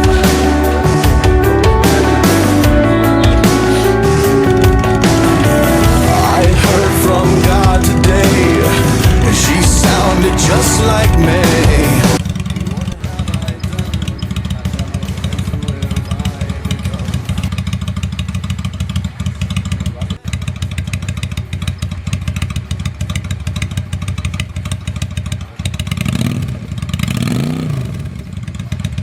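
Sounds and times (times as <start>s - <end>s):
motorcycle engine idling and revving: 0.0s - 29.0s.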